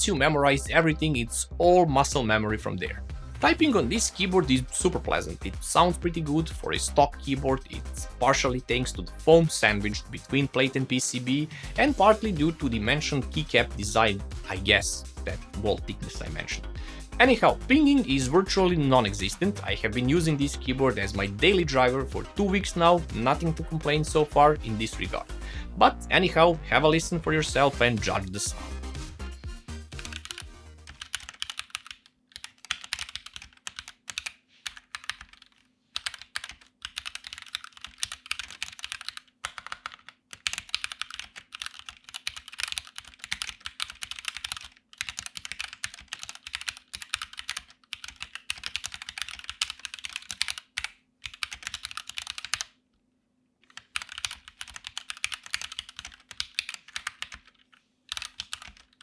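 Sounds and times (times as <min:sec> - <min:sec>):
typing on mechanical keyboard: 0:30.0 - 0:52.8, 0:53.6 - 0:59.0.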